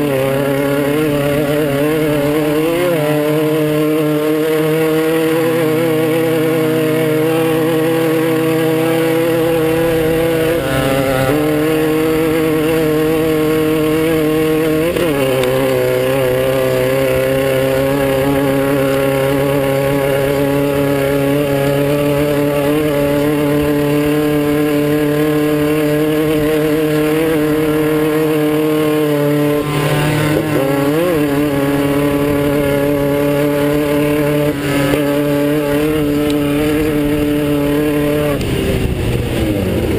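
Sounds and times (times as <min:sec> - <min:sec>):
buggy engine revving at high speed: 0:00.0 - 0:39.9.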